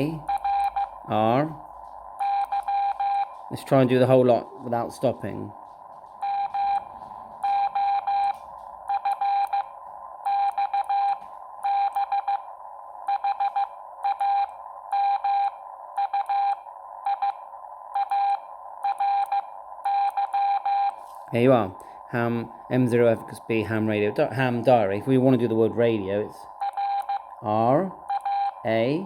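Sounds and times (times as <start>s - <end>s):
morse code beeps: 0.0s - 1.5s, 2.2s - 5.6s, 6.2s - 21.1s, 26.6s - 28.7s
receiver hiss: 0.0s - 29.0s.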